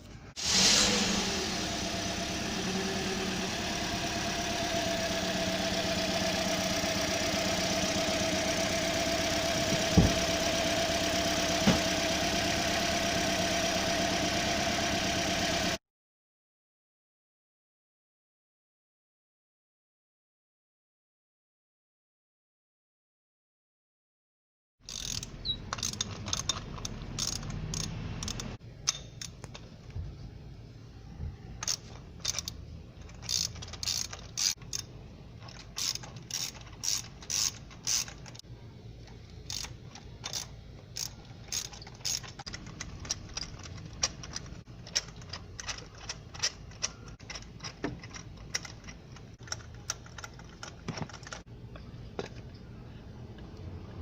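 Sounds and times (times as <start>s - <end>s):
ratchet wrench clicking: 24.9s - 29.7s, 31.6s - 38.4s, 39.3s - 51.4s.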